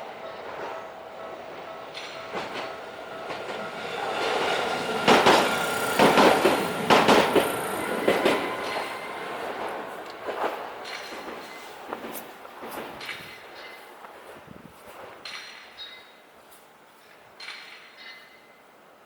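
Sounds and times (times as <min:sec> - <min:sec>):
train wheels clattering over rail joints: 0:00.0 - 0:14.1.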